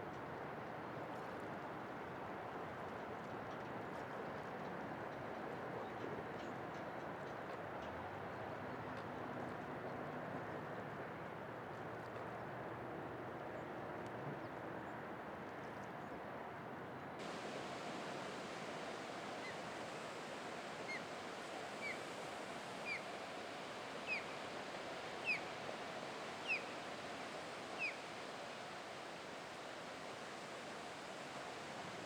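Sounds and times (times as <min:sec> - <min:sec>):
surf hissing: 0:17.2 - 0:32.0.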